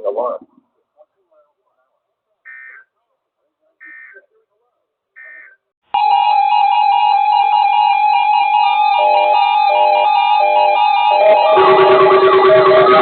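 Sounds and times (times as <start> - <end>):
melody of notes: 6.5 - 13.0
electronic alert tone: 11.1 - 13.0.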